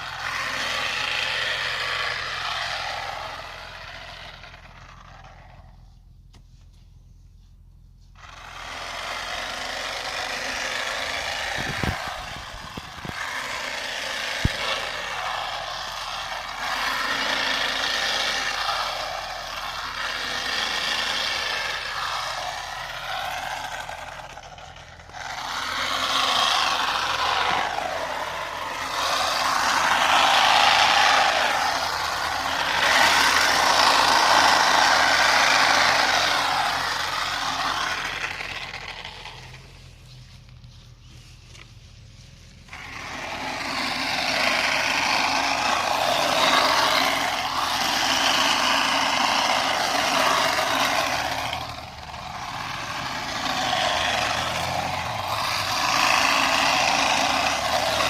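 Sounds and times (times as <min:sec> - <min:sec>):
small cutting machine engine: 0:00.0 - 0:06.0, 0:08.1 - 0:58.0.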